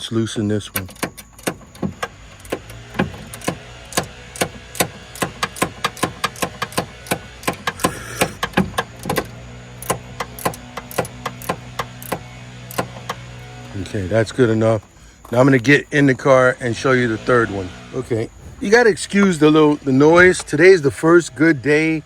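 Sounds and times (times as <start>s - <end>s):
steady low hum: 0.0s - 22.0s
ratcheting wrench clicking: 0.7s - 15.7s.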